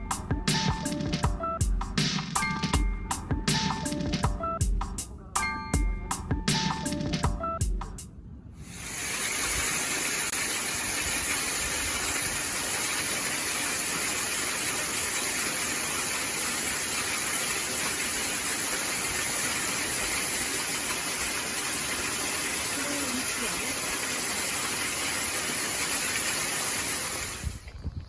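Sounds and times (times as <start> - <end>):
wind: 7.3 - 28.0
heavy rain: 8.7 - 27.6.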